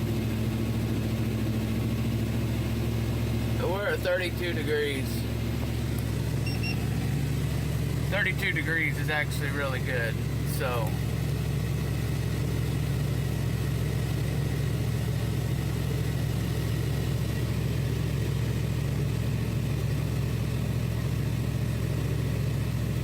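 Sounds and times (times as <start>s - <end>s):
engine idling: 0.0s - 23.0s
air conditioning running: 3.6s - 11.0s.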